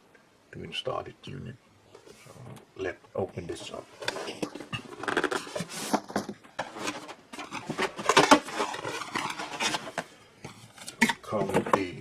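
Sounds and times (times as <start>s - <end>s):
packaging rustling: 3.6s - 11.4s.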